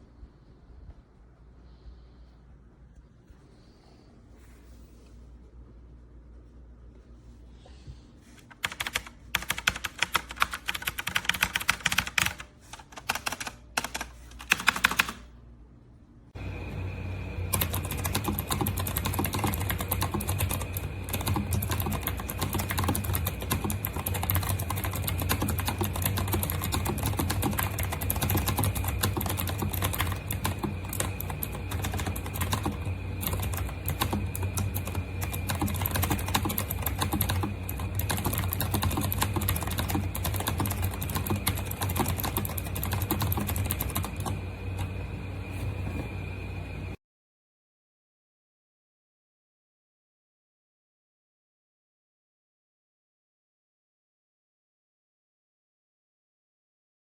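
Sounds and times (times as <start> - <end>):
steady low hum: 0.0 - 47.0
fast typing on mechanical keyboard: 8.5 - 15.3, 17.5 - 44.9.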